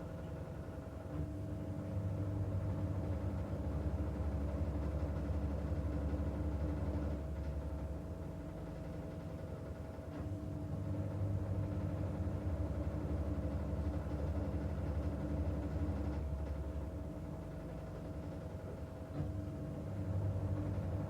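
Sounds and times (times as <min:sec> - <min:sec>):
washing machine motor hum: 0:00.0 - 0:21.0.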